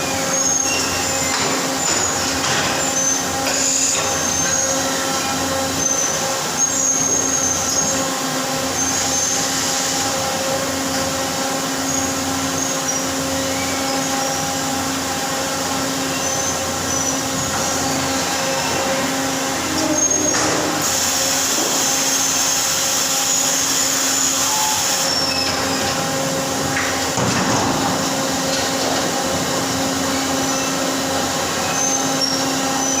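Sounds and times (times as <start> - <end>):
short high squeals: 0.0 - 8.1, 11.8 - 14.6, 16.0 - 20.8, 23.1 - 26.0, 31.5 - 33.0
machinery hum: 0.0 - 33.0.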